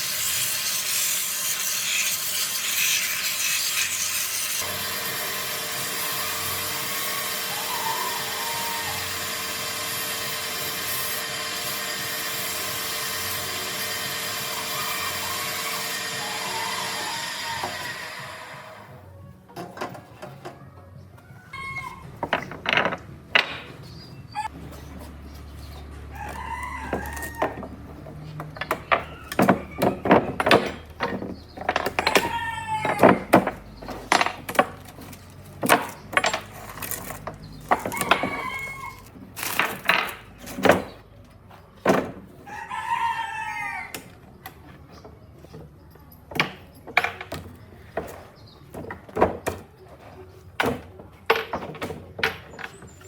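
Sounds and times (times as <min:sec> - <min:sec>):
rooster crowing: 0:07.4 - 0:09.2, 0:16.2 - 0:18.0, 0:26.1 - 0:27.6, 0:37.8 - 0:39.1, 0:42.5 - 0:44.0.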